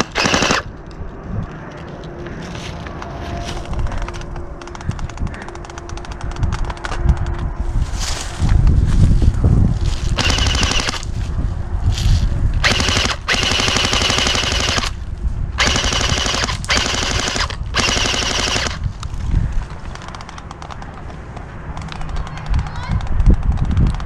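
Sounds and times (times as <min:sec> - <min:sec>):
airsoft guns firing bursts: 0:00.0 - 0:00.7, 0:10.2 - 0:11.0, 0:12.6 - 0:14.9, 0:15.6 - 0:18.8.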